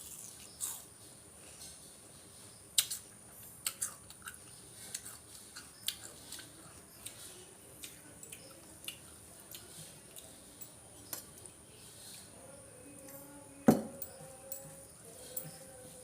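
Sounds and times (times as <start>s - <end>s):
chewing food: 2.8s - 12.4s.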